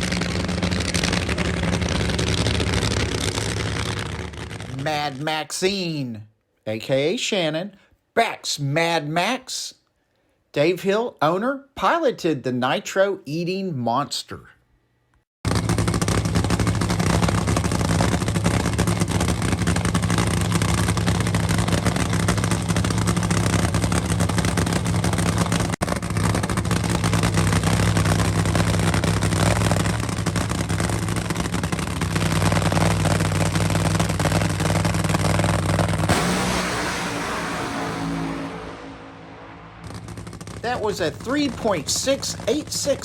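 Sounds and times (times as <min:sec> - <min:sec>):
loud supercharged engine running: 0:00.0 - 0:04.9, 0:15.4 - 0:43.0.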